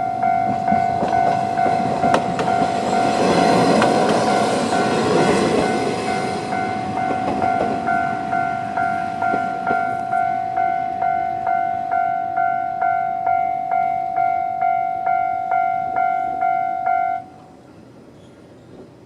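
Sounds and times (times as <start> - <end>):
level crossing alarm bell ringing: 0.0 - 17.3
diesel railcar rumbling past: 0.0 - 19.0.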